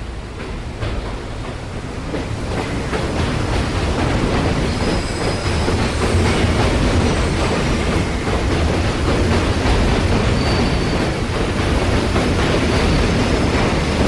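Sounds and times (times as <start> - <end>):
train rumbling on rails: 0.0 - 14.0
wheels squealing: 10.2 - 11.3.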